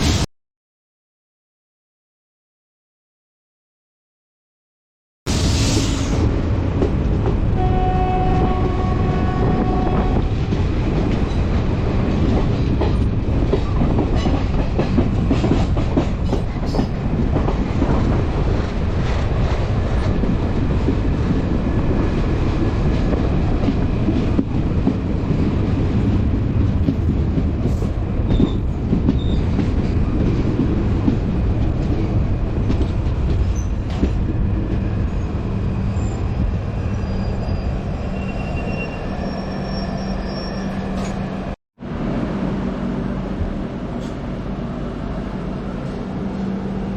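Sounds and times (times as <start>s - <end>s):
train horn: 7.5s - 10.3s
train clattering over rail joints: 9.4s - 21.6s, 22.6s - 35.4s.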